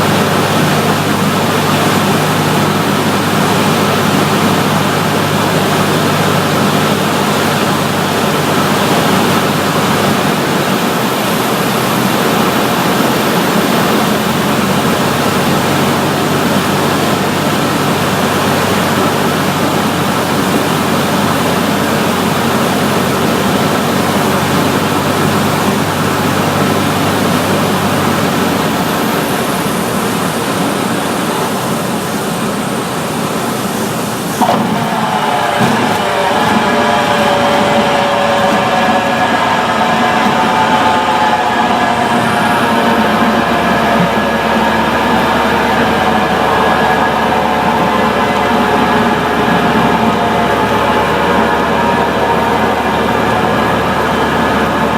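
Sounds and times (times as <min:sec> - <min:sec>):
airplane engine and propeller: 0:00.0 - 0:54.9.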